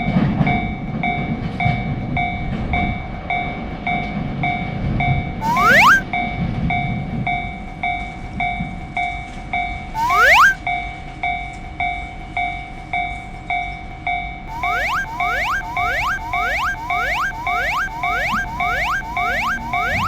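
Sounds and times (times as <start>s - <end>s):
rising sound effect: 5.4s - 6.0s, 10.0s - 10.6s, 14.5s - 20.0s.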